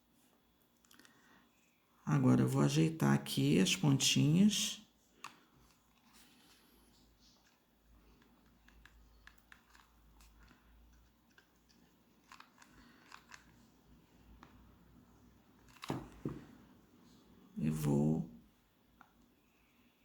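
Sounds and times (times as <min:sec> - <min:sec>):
light handling clicks and rustles: 0:05.1 - 0:14.6.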